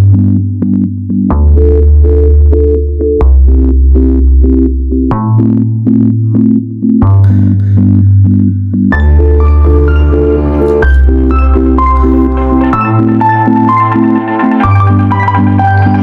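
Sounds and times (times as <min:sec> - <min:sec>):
electronic music with synthesizer: 0:00.0 - 0:16.0.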